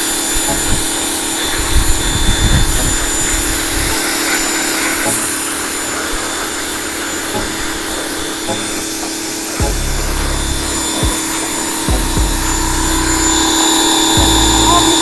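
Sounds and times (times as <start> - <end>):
pressure washer motor hum: 0.0 - 15.0
water jet hissing: 0.0 - 15.0
low rumble: 9.6 - 15.0.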